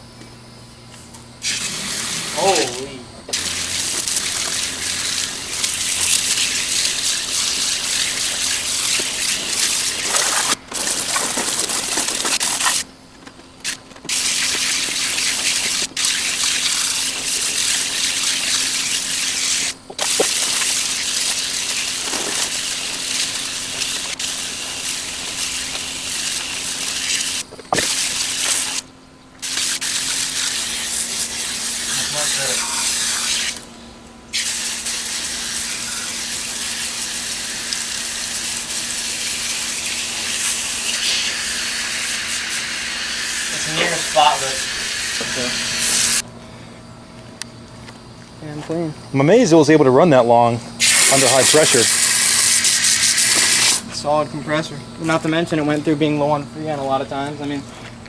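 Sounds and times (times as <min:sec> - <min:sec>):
faint steady hum: 0:00.0 - 0:58.0
water jet spraying hiss: 0:01.4 - 0:12.9, 0:13.6 - 0:28.8, 0:29.4 - 0:33.6, 0:34.3 - 0:46.2, 0:50.8 - 0:53.8.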